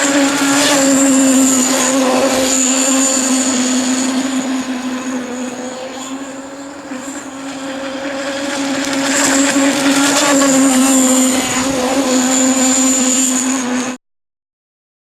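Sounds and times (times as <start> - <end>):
model boat engine buzzing: 0.0 - 14.0.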